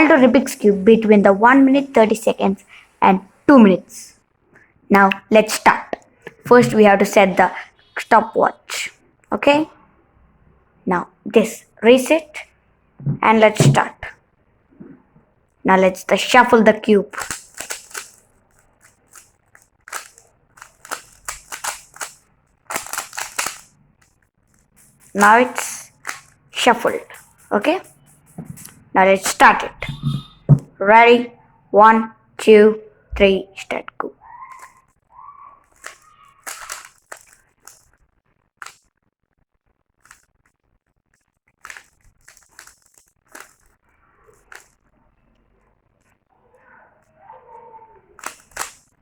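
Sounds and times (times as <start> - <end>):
puzzle cube clicking as twisted: 17.1 - 28.0, 35.7 - 37.9, 38.6 - 38.8, 40.0 - 40.4, 41.6 - 44.8, 48.2 - 49.0.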